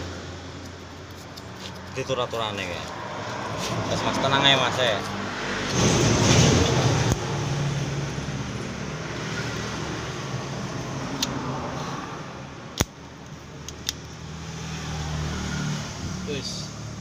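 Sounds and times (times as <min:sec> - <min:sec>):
sharp clicks: 0:12.7 - 0:14.1.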